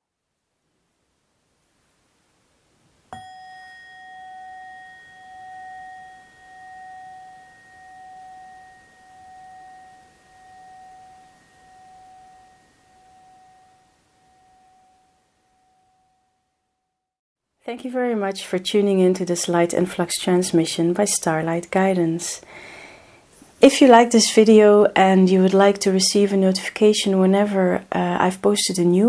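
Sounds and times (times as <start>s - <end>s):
struck metal bell ringing: 3.1s - 16.4s.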